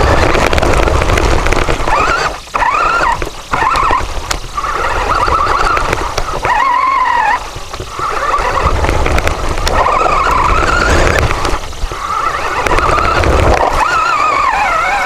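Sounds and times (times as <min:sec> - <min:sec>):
toy rover motor whining: 0:00.0 - 0:15.0
wheels rumbling on ground: 0:00.0 - 0:15.0.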